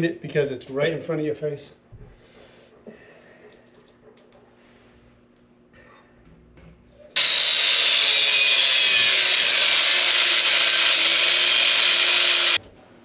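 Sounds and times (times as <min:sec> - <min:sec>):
power drill running: 0:07.2 - 0:12.6.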